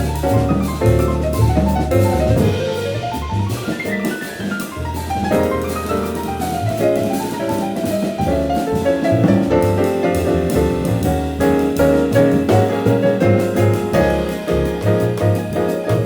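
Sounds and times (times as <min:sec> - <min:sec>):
drum kit with cymbals: 0:00.0 - 0:16.0
piano: 0:00.0 - 0:16.0.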